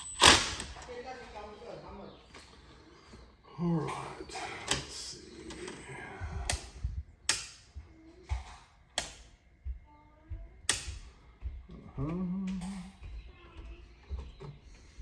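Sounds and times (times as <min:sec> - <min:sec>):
low hummed voice: 0:01.4 - 0:09.0, 0:09.6 - 0:15.0.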